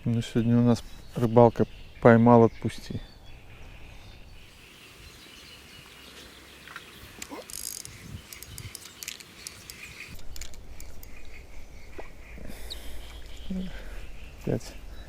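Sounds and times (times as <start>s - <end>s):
faint birds: 0.0s - 15.0s
faint insects: 4.4s - 15.0s.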